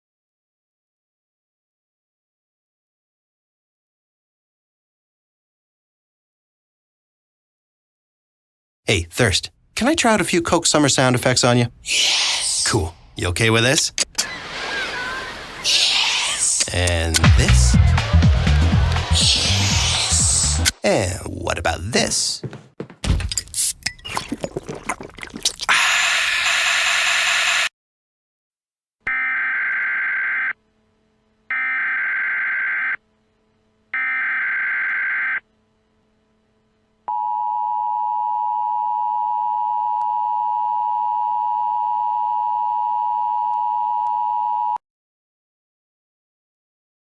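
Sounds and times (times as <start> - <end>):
harsh noise burst: 11.8 - 13.2, 13.8 - 20.9, 25.4 - 27.7
data tone bursts: 29.1 - 30.6, 31.5 - 33.0, 34.0 - 35.5
two-tone attention signal: 34.0 - 35.4.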